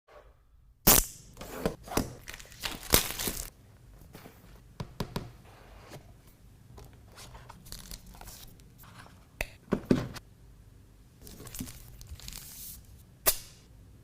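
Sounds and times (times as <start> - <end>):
plastic wrap tearing and crinkling: 2.2 - 3.5, 11.2 - 12.8.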